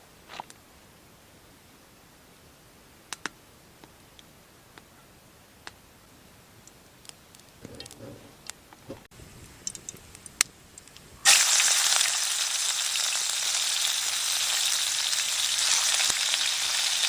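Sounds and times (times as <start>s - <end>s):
faint steady hiss: 0.0s - 17.0s
sharp clicks: 9.4s - 11.1s.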